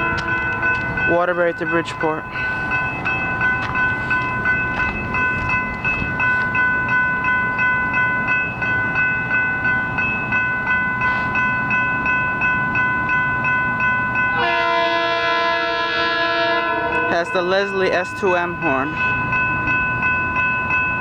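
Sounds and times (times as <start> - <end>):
crossing bell ringing: 0.0 - 21.0
train rumbling: 0.0 - 21.0
locomotive air horn chord: 14.3 - 17.1.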